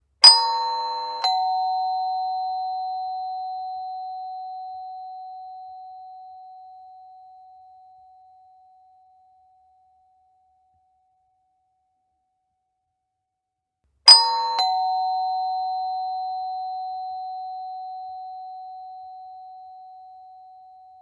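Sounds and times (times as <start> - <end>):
ding-dong doorbell chime: 0.2 - 9.1, 14.1 - 21.0.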